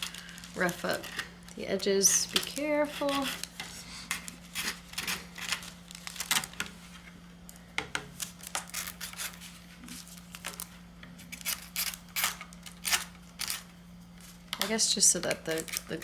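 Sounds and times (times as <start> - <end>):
sandpaper scratching plastic: 2.7 - 3.5.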